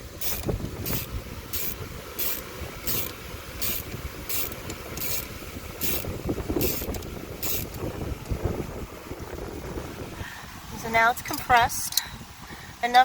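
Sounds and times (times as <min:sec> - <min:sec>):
socket ratchet clicking: 0:00.2 - 0:07.8.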